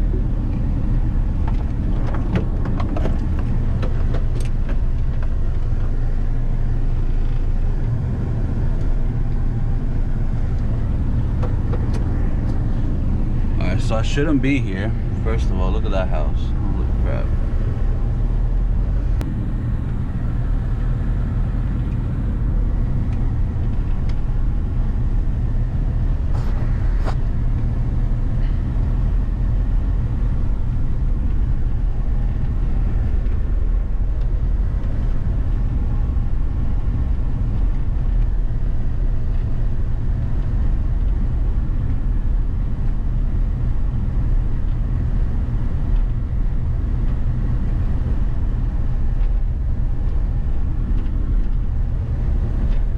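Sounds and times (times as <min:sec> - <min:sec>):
car road and engine rumble: 0:00.0 - 0:52.9.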